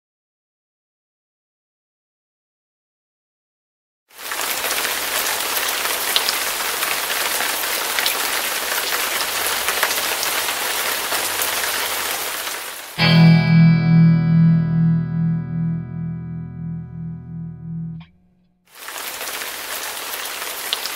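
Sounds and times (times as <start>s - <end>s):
steady rain falling: 4.1s - 13.0s, 18.7s - 20.9s
electric guitar chord: 13.0s - 18.6s.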